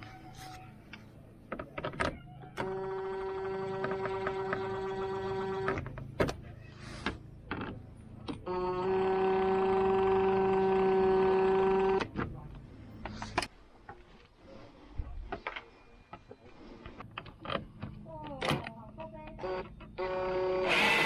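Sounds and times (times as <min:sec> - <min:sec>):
cordless drill motor running: 0:08.5 - 0:12.0, 0:19.4 - 0:21.0.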